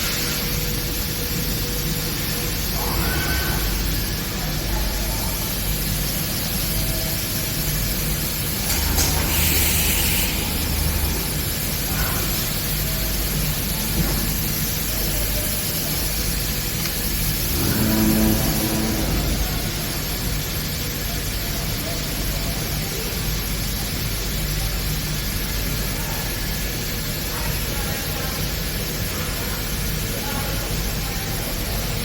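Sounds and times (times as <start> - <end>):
machinery humming: 0.0 - 32.0
burst of hissing: 9.1 - 12.6.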